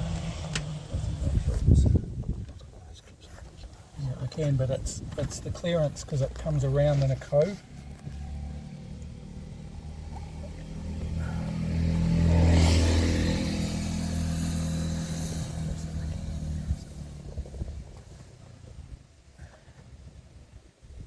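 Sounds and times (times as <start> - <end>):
motor vehicle driving past: 7.6 - 19.0.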